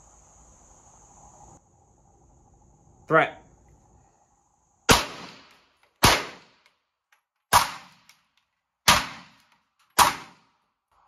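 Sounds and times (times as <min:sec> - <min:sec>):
pistol shots: 0:04.9 - 0:06.7, 0:07.5 - 0:08.2, 0:08.8 - 0:10.5.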